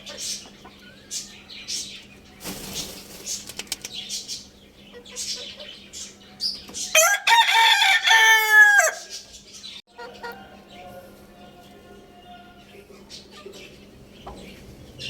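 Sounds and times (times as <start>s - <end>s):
rooster crowing: 7.0s - 9.1s.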